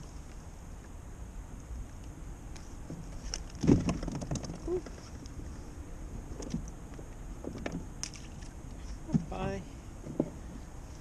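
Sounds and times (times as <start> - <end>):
low wind: 0.0 - 11.0.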